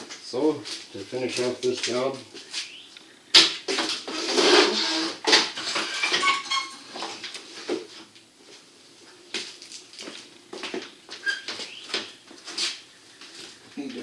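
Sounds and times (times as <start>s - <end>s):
metal scraping: 4.1s - 7.2s.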